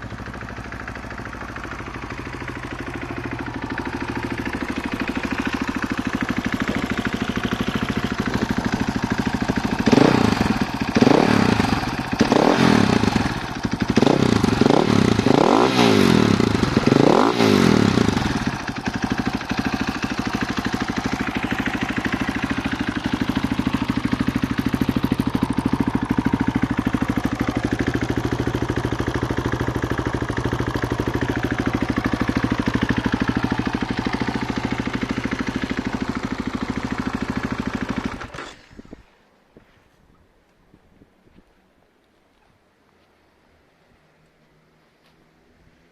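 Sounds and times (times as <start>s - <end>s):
motorcycle engine idling: 0.0s - 39.0s
engine revving with throttle blips: 9.8s - 18.6s.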